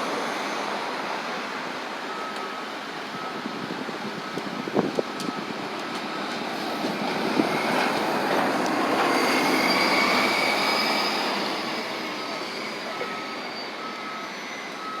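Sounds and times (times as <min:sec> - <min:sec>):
bus passing: 0:00.0 - 0:15.0
high thin squeal: 0:08.9 - 0:15.0.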